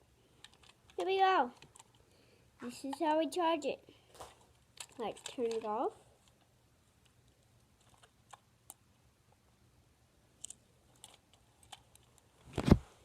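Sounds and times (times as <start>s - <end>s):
toy car handling clicks: 4.8s - 5.8s.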